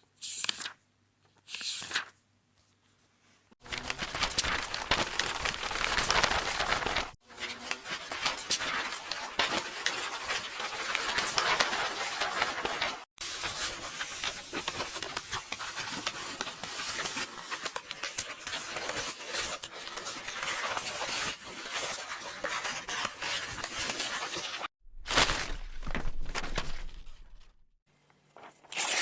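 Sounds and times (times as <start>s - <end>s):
paper pages rustling: 0.4s - 27.6s.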